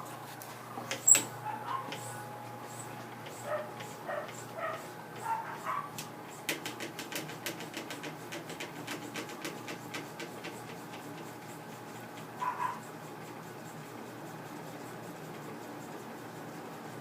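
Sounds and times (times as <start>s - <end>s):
ceiling fan humming: 0.0s - 17.0s
dog whimpering: 12.4s - 12.8s.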